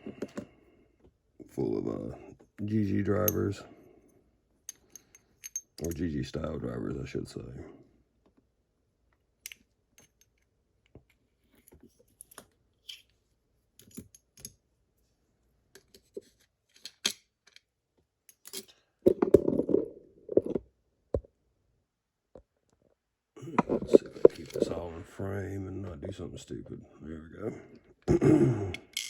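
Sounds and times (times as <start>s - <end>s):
handling and clunking: 23.5s - 24.9s.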